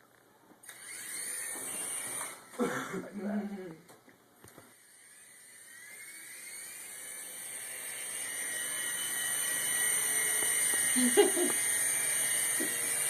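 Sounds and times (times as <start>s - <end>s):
toy helicopter motor whining: 0.6s - 2.6s, 4.7s - 13.0s.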